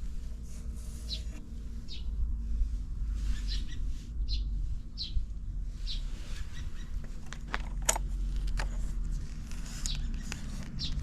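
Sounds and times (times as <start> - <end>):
steady low rumble: 0.0 - 11.0
bird chirping: 1.0 - 2.2, 3.2 - 7.2, 9.7 - 11.0.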